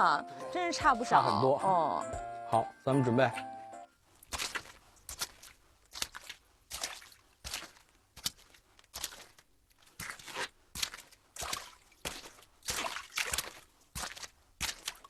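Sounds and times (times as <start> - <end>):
footsteps on wet floor: 4.1 - 15.0.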